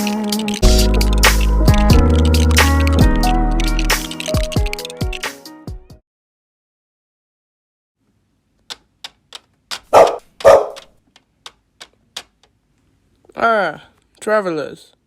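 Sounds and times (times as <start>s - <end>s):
dog barking: 9.9s - 10.9s.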